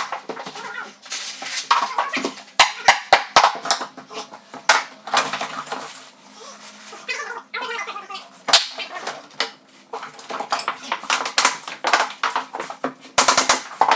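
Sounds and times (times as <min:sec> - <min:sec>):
sharp knocks and clatter: 0:01.6 - 0:05.9, 0:09.4 - 0:13.9.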